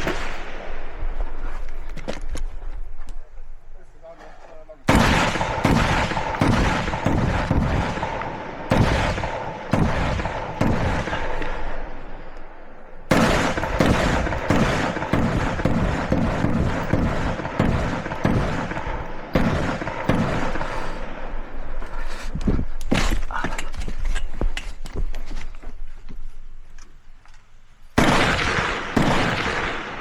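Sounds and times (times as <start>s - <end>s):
rifle shots echoing: 0.0s - 1.2s, 4.9s - 21.6s, 28.0s - 30.0s.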